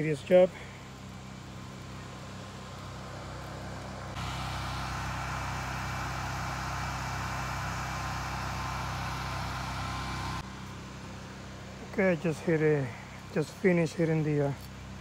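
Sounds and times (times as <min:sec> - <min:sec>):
pressure washer engine running: 0:02.8 - 0:10.4
high-pressure water spray hiss: 0:04.2 - 0:10.4.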